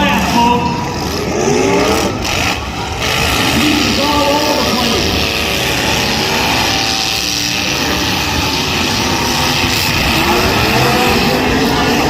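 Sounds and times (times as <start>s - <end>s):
car engines revving: 0.0s - 12.0s.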